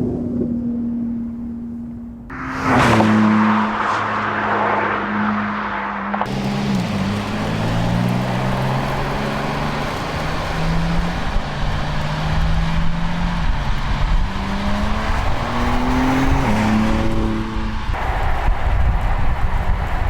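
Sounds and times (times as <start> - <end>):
low rumble: 0.0 - 9.2
car engine revving: 2.3 - 20.0.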